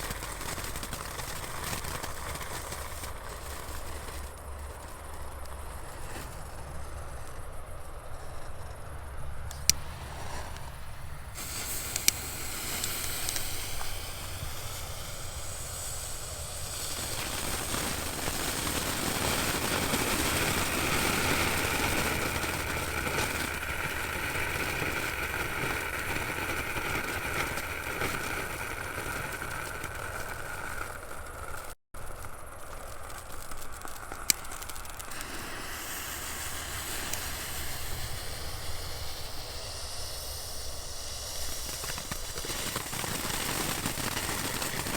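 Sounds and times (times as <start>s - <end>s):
faint firework whistle: 0.0s - 28.5s, 34.2s - 44.9s
fireworks sputtering hiss: 0.0s - 44.9s
firework pops: 9.5s - 44.9s.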